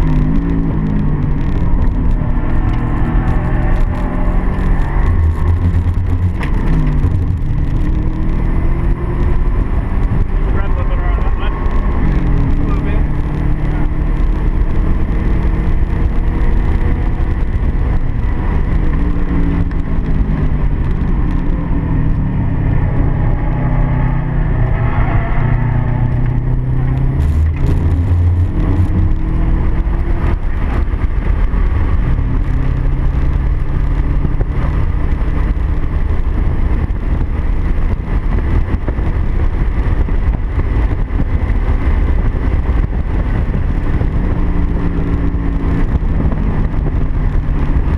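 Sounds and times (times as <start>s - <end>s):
car engine accelerating and shifting: 0.0s - 47.9s.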